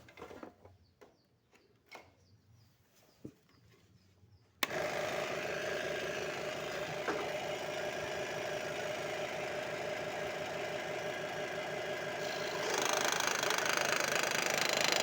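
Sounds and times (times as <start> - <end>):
electric scroll saw chattering: 4.6 - 15.0.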